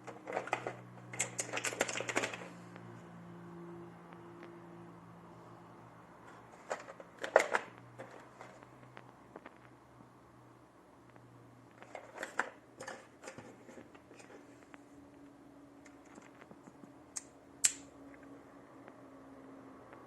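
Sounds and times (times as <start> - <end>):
handling rustles and clicks: 0.0 - 2.5, 6.3 - 9.7, 11.7 - 14.8, 15.8 - 16.9
faint steady hum: 0.0 - 20.0
sharp clicks: 17.2 - 17.9.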